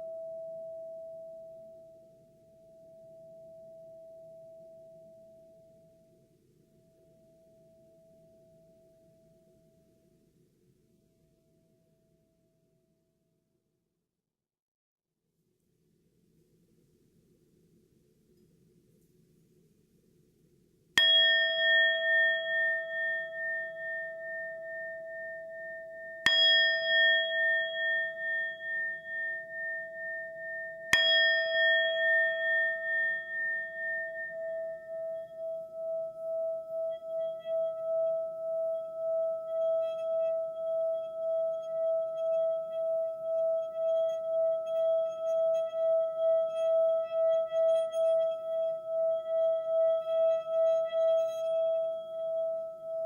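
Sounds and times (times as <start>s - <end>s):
singing bowl ringing: 0.0s - 6.1s, 21.0s - 53.0s
faint low hiss: 0.0s - 11.7s, 15.4s - 53.0s.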